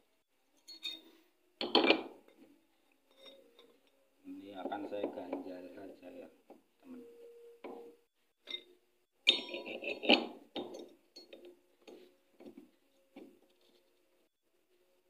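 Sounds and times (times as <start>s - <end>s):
small metal parts clinking: 0.6s - 1.0s, 3.1s - 3.8s.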